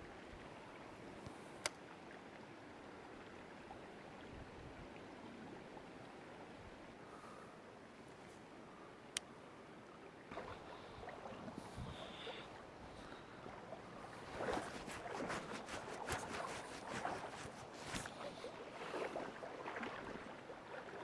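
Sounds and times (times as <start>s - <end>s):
creek water running: 10.0s - 21.0s
splashing steps in water: 14.1s - 18.5s.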